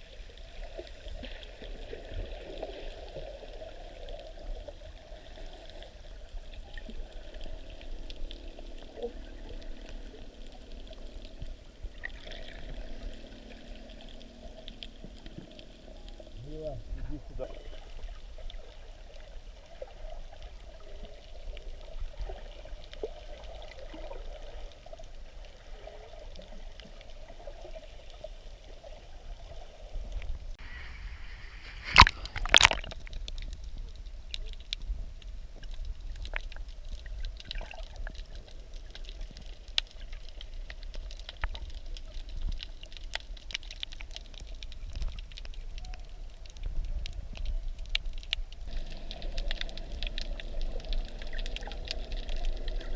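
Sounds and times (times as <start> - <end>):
water sloshing and gurgling: 0.0 - 52.9
faint clicks: 6.6 - 16.4, 31.9 - 52.9.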